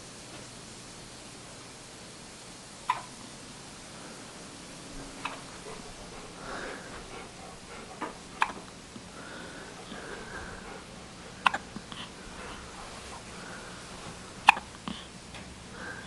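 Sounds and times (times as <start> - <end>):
baby hiccuping: 11.4 - 11.7, 14.4 - 14.7.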